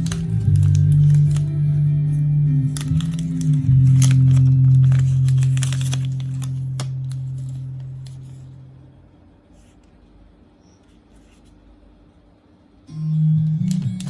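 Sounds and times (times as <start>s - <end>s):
low note of background music: 0.0s - 9.4s, 12.7s - 14.0s
handling clicks and scratches: 2.8s - 8.4s.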